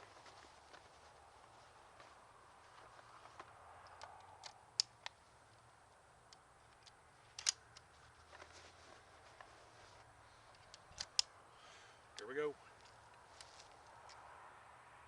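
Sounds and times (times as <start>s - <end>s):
shotgun clicks: 6.8s - 7.8s, 10.6s - 11.3s.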